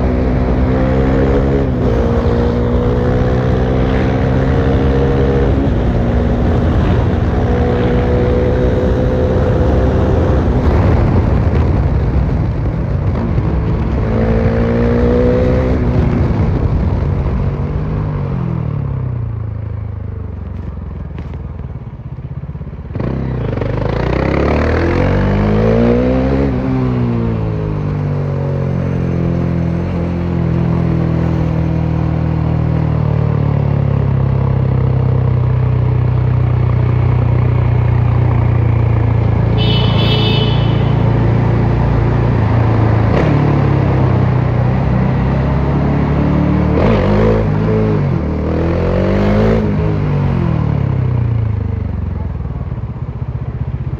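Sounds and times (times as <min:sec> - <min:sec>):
motorcycle engine revving: 0:00.0 - 0:18.9, 0:22.8 - 0:53.9
brief high-pitched tone: 0:39.6 - 0:41.2.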